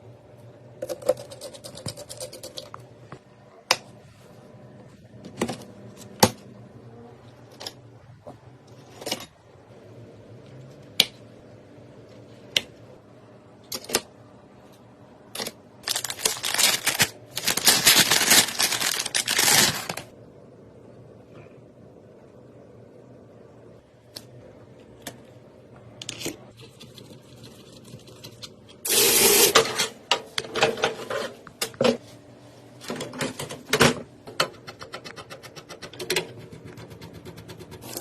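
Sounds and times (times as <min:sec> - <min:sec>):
computer parts clicking and knocking: 0:32.9 - 0:37.9.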